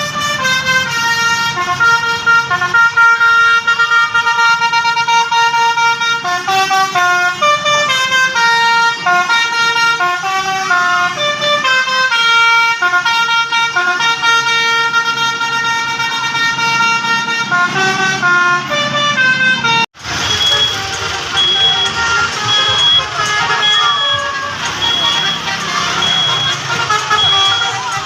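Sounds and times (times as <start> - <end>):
bus air horn playing a tune: 0.0 - 28.0.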